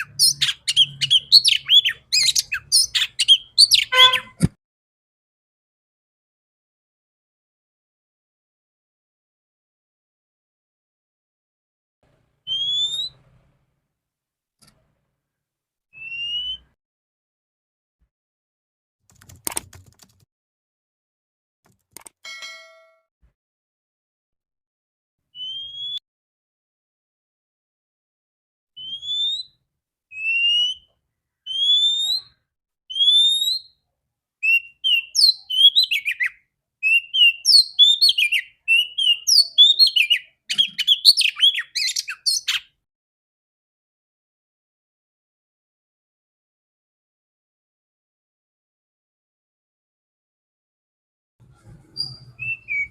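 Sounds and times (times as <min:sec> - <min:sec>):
bird whistled call: 0:00.0 - 0:04.4, 0:12.5 - 0:13.2, 0:16.0 - 0:16.8, 0:25.4 - 0:26.0, 0:28.8 - 0:29.6, 0:31.5 - 0:32.3, 0:34.4 - 0:42.6, 0:52.0 - 0:52.9.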